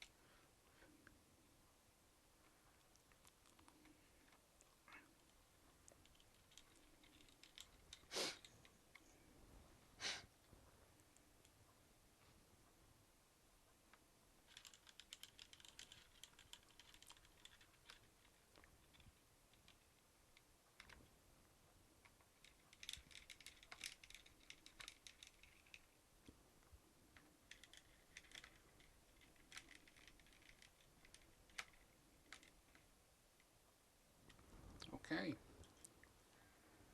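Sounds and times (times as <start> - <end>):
typing on laptop keyboard: 14.4 - 19.9, 22.1 - 25.9, 27.5 - 32.6.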